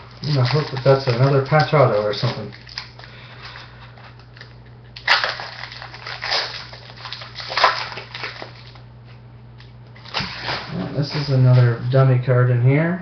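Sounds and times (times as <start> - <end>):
foil wrapper tearing and crinkling: 0.0 - 8.9.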